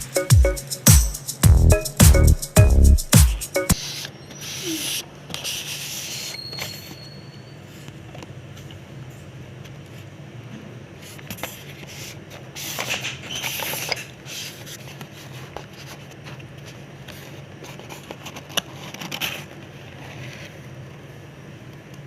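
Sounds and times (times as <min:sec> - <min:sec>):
objects scraping and rustling: 0:11.0 - 0:20.8.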